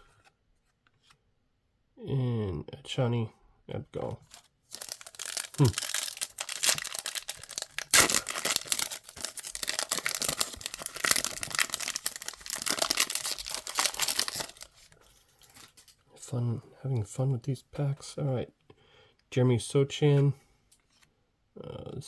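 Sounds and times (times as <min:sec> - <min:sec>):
wrapper tearing and crinkling: 0:04.3 - 0:15.9.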